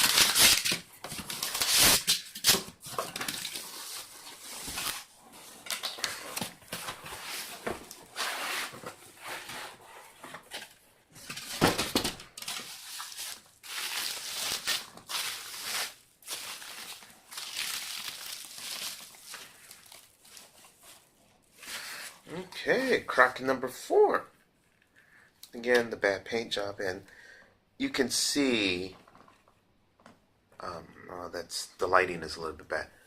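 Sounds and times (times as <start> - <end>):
packaging rustling: 0.0 - 22.1.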